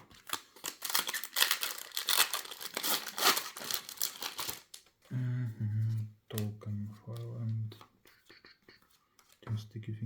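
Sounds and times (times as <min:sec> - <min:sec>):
foil wrapper crinkling: 0:00.1 - 0:04.9.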